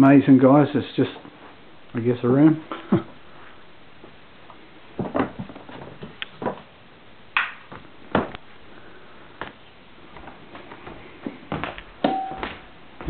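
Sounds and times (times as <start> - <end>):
footsteps: 9.4 - 13.0.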